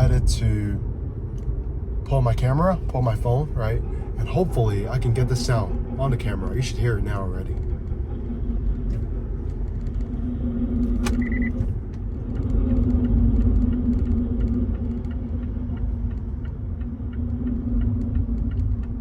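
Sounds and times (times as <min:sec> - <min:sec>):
road rumble: 0:00.0 - 0:19.0
short beep: 0:11.2 - 0:11.6.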